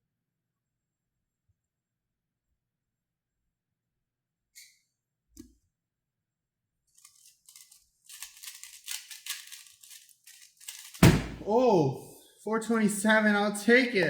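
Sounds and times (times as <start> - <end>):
plastic cube clicking and rattling: 6.9 - 11.0
soft thump: 11.0 - 11.5.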